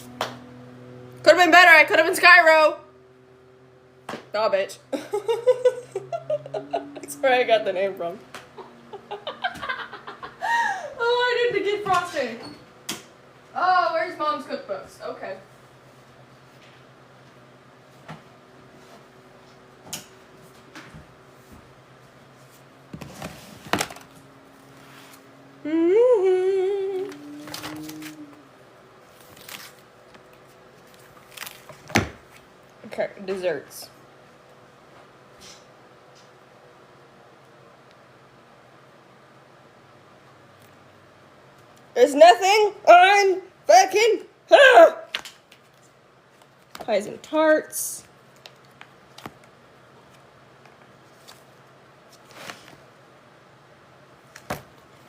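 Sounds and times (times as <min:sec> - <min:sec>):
lower tone: 0:25.6 - 0:28.6
book pages turning: 0:27.1 - 0:28.3, 0:29.1 - 0:32.5, 0:50.8 - 0:52.9.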